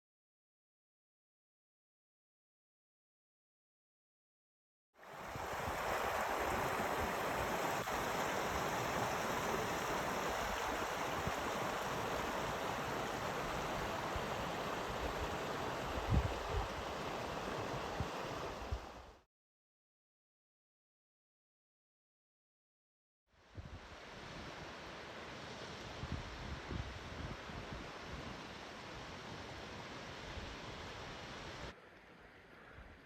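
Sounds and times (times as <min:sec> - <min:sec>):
mountain stream rushing: 0:05.0 - 0:19.1.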